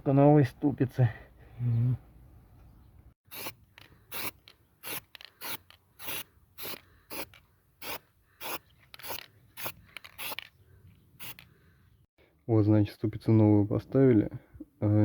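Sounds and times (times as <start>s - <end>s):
hand tool rasping strokes: 3.3s - 10.4s.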